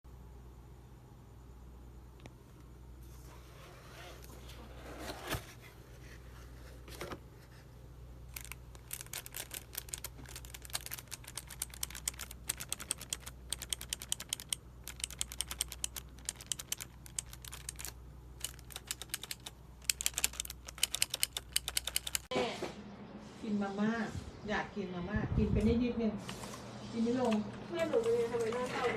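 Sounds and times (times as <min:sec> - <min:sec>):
faint low hum: 0:00.0 - 0:28.9
mechanical keyboard typing: 0:08.3 - 0:22.3.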